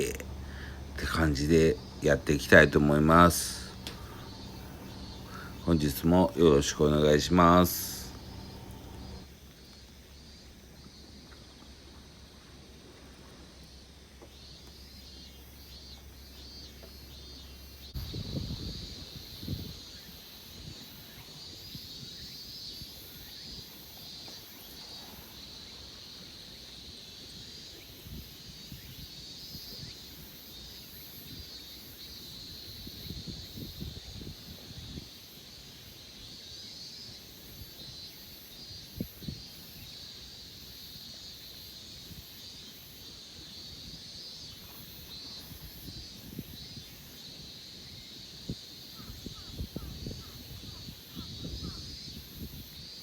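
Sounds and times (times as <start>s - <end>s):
high pulsing buzz: 0.0s - 9.2s
wind buffeting microphone: 0.0s - 9.2s, 18.0s - 19.8s, 49.2s - 51.8s.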